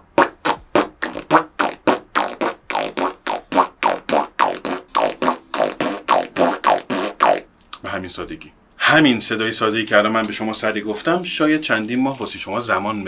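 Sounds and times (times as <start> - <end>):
beatbox lip roll: 0.0 - 7.8.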